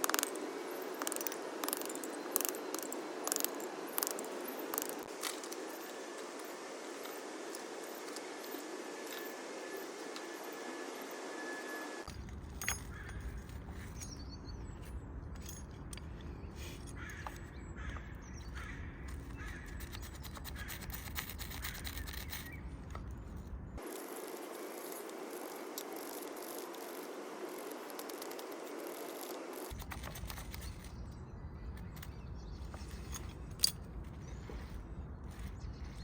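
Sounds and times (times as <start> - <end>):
birds calling: 16.2 - 23.2.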